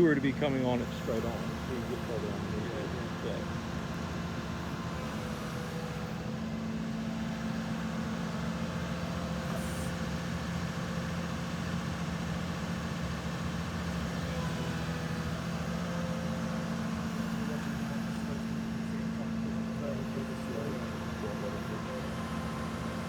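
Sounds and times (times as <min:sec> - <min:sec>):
excavator diesel engine drone: 0:00.0 - 0:23.0.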